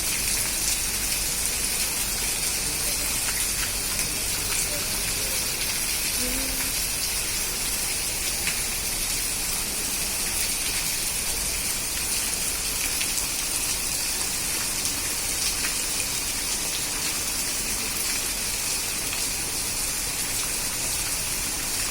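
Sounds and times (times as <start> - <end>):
heavy rain pouring: 0.0 - 21.9
raindrops ticking close by: 0.1 - 21.9.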